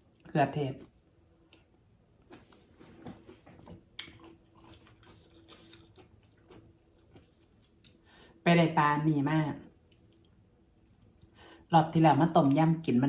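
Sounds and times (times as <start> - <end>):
chewing and mouth noises: 0.0 - 8.1, 9.7 - 11.4.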